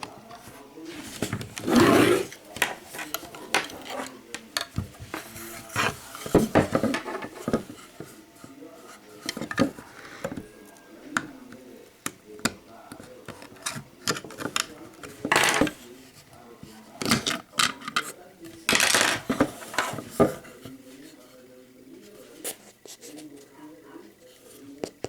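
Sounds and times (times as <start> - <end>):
plastic housing clicks and scraping: 1.2 - 8.1, 12.0 - 15.8, 17.0 - 20.5.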